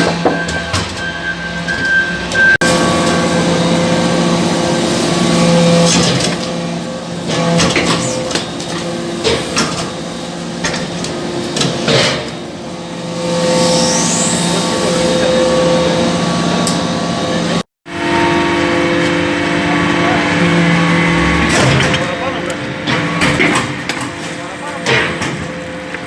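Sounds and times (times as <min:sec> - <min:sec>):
hydraulic press humming: 0:00.0 - 0:26.0.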